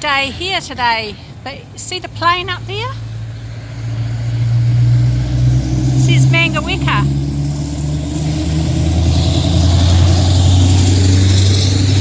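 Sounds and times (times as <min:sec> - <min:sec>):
vehicle engine humming: 0:00.0 - 0:12.0.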